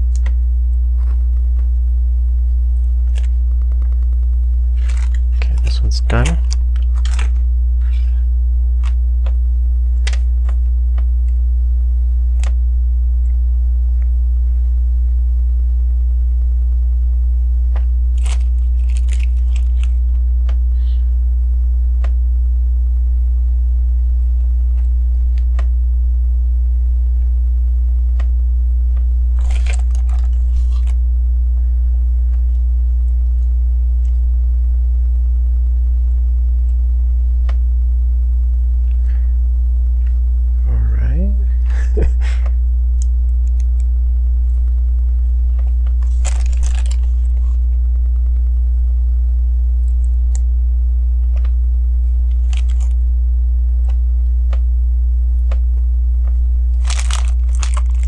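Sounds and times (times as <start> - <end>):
low electrical hum: 0.0 - 58.0
plastic pieces rattling: 4.8 - 5.6, 29.4 - 30.9, 46.0 - 47.5, 52.3 - 53.0, 56.8 - 58.0
plastic pieces clicking: 6.2 - 7.4, 29.4 - 30.9, 46.0 - 47.5, 52.3 - 53.0, 56.8 - 58.0.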